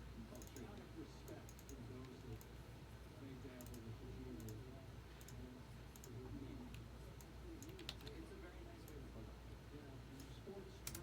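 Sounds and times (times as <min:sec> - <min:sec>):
keyboard and mouse clicks: 0:06.0 - 0:08.2, 0:10.2 - 0:11.0.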